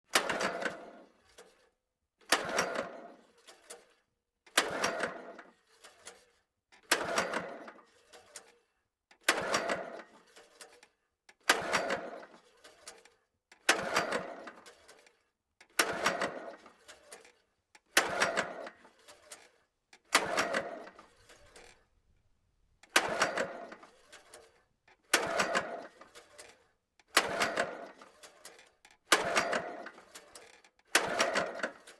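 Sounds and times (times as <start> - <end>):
lawnmower recoil starter pulls: 11.5 - 13.1, 13.7 - 15.2, 15.8 - 21.9, 22.8 - 31.9.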